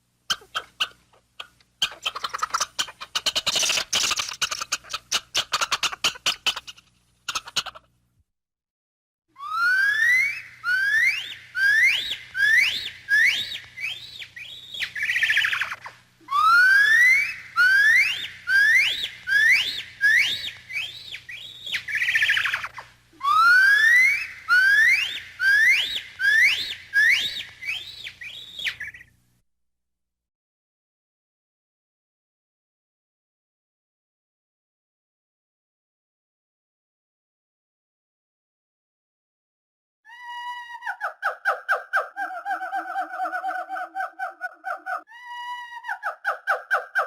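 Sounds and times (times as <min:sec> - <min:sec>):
gibbon whooping calls: 0:09.4 - 0:29.0, 0:40.1 - 0:47.0.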